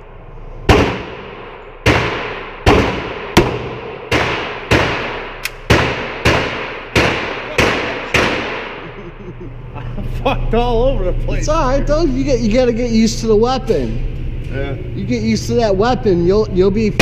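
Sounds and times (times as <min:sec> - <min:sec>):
pistol gunshots: 0:00.7 - 0:08.8.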